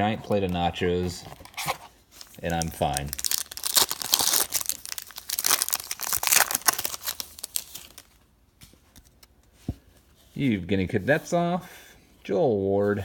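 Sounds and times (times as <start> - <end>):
wrapper crinkling and tearing: 1.3 - 8.2.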